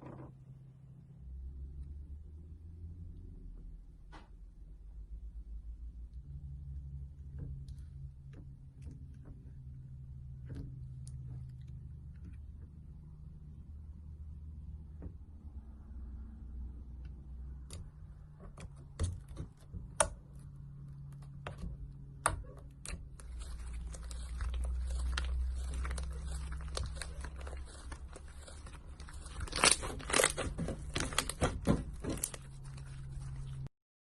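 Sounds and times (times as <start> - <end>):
slime clicking and crackling: 21.4 - 33.6.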